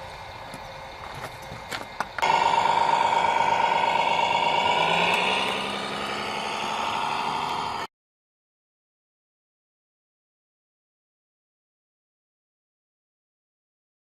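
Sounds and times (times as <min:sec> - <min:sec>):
model truck engine drone: 0:00.0 - 0:07.9.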